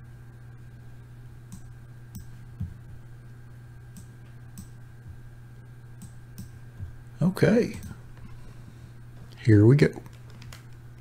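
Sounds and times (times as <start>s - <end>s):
low hum: 0.0s - 11.0s
computer mouse clicking: 1.5s - 2.3s, 3.9s - 4.8s, 6.0s - 6.6s, 7.7s - 8.0s.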